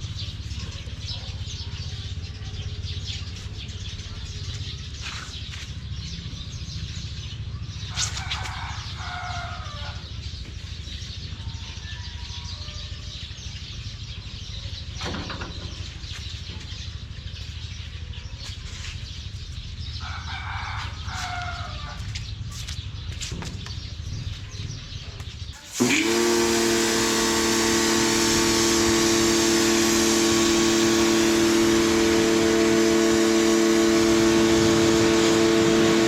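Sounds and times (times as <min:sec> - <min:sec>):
pressure washer motor whine: 0:25.6 - 0:36.0
water jet hissing: 0:25.6 - 0:36.0.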